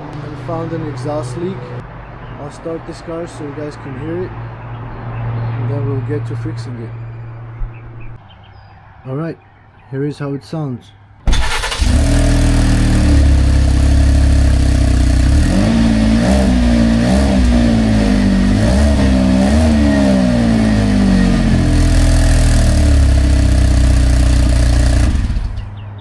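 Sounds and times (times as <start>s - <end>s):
car engine starting: 11.2s - 26.0s
engine revving: 11.2s - 26.0s
loud engine with leaking exhaust: 11.3s - 26.0s.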